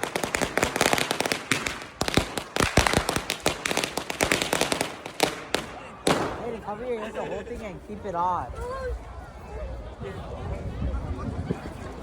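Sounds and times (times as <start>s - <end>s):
firecrackers cracking and popping: 0.0s - 6.4s.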